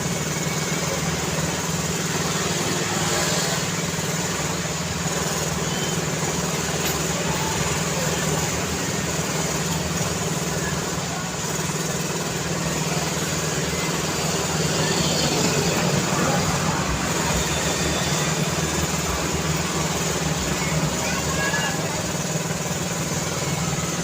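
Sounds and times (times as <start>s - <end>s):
road traffic: 0.0s - 24.0s.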